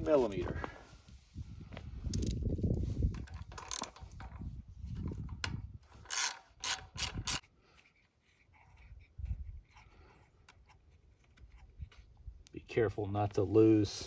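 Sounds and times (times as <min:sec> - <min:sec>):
socket ratchet clicking: 0:06.1 - 0:07.4.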